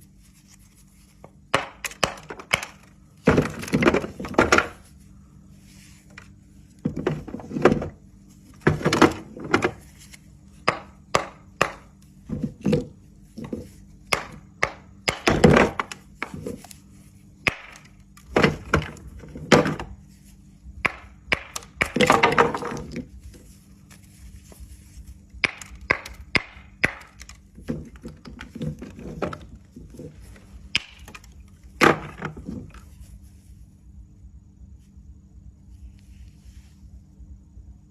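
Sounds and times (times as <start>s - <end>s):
clay tiles snapping and crunching: 25.4s - 32.6s.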